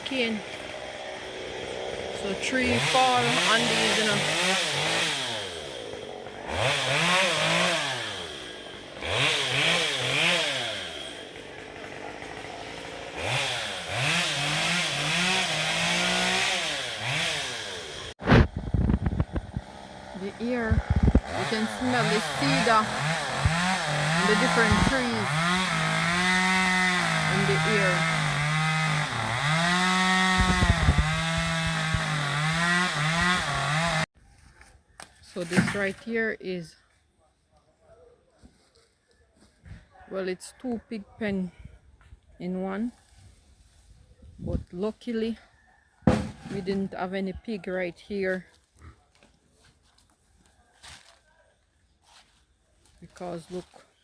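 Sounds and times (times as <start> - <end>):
chainsaw engine revving: 0.0 - 34.1.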